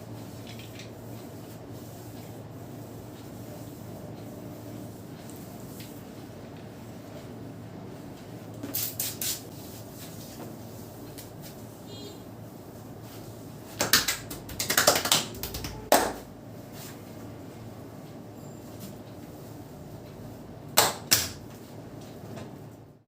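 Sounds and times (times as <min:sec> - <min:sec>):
hands slapping skin: 0:13.8 - 0:16.2.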